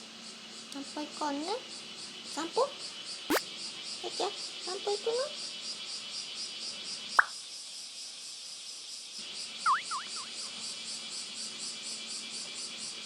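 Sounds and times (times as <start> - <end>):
cicadas pulsing chorus: 0.0 - 13.0
short high chirps: 9.7 - 10.5.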